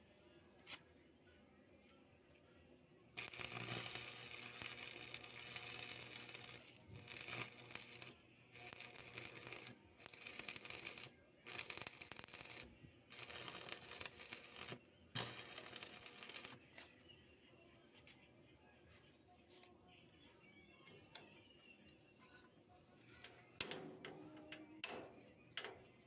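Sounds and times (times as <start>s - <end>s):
harsh scraping on metal: 3.2s - 16.5s.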